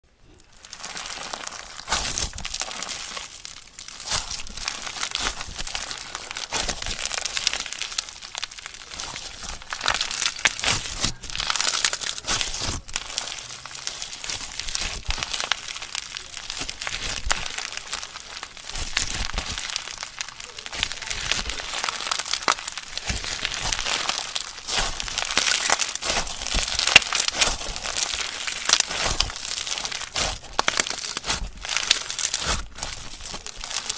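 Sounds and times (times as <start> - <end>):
crunchy slime crackling: 0.1 - 33.9.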